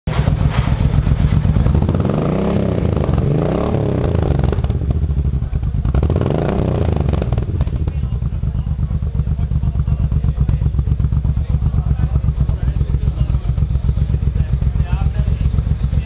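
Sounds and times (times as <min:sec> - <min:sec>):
motorcycle engine idling and revving: 0:00.1 - 0:16.0.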